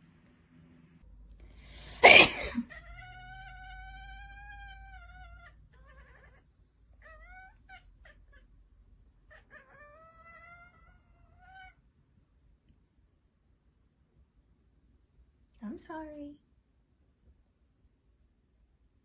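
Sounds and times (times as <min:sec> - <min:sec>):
woman sneezing: 0:02.0 - 0:02.7
cat meowing: 0:02.6 - 0:08.6, 0:09.2 - 0:11.8.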